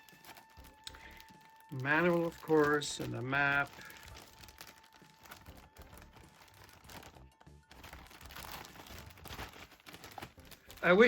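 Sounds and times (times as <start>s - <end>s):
paper rustling and handling: 0.0s - 11.0s.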